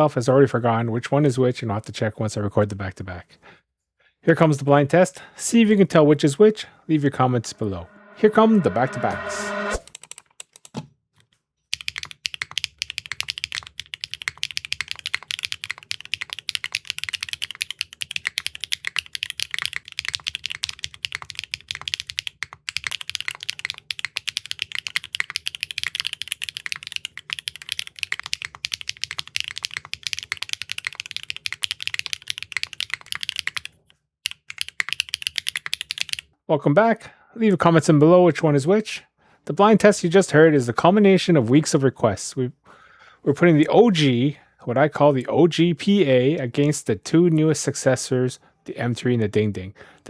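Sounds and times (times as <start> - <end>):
mechanical keyboard typing: 11.7 - 36.2.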